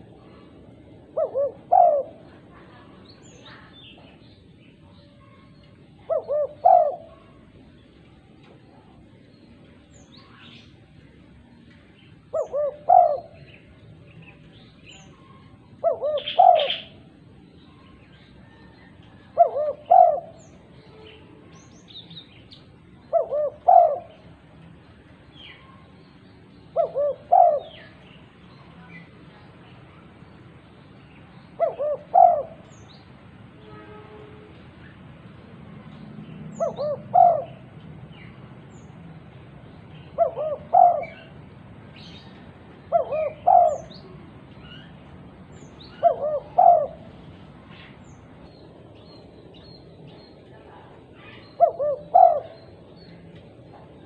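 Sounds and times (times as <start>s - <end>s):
dove cooing: 0.0s - 3.0s, 6.0s - 7.5s, 12.2s - 13.7s, 15.2s - 17.2s, 18.4s - 20.6s, 23.0s - 24.3s, 26.7s - 28.1s, 31.6s - 32.7s, 36.5s - 37.8s, 40.0s - 41.5s, 42.1s - 44.9s, 45.8s - 47.2s, 50.9s - 52.9s.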